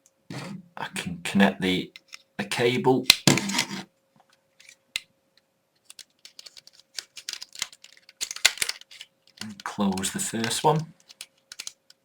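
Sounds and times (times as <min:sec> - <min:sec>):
plastic clicks and rattles: 0:05.8 - 0:12.0.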